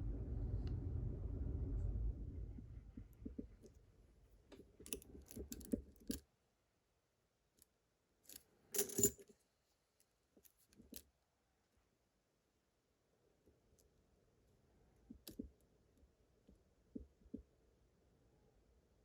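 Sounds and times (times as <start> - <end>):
metallic clink: 8.7 - 9.3.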